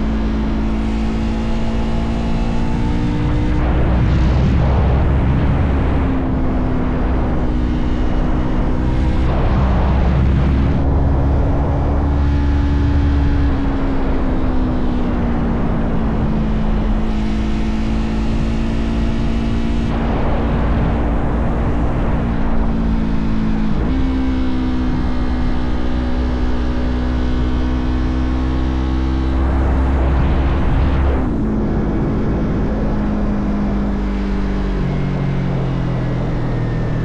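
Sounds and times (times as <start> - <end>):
motorcycle engine cruising: 0.0 - 37.0
road and wind noise: 0.0 - 37.0
loud rush of noise: 0.6 - 26.5, 27.3 - 34.9.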